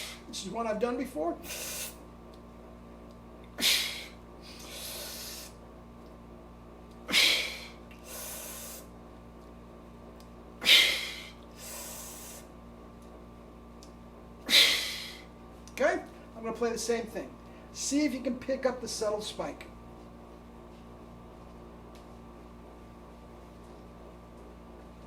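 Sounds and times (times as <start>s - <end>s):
man breathing forcefully: 0.0s - 0.3s, 1.4s - 2.0s, 3.6s - 5.6s, 7.1s - 8.9s, 10.6s - 12.5s, 14.4s - 15.3s.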